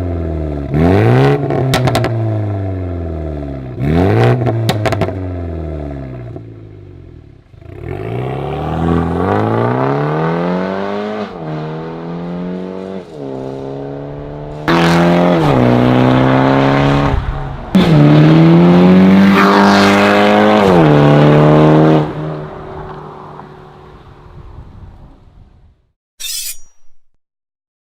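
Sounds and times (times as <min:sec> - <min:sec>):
car engine and exhaust revving: 0:00.0 - 0:24.0.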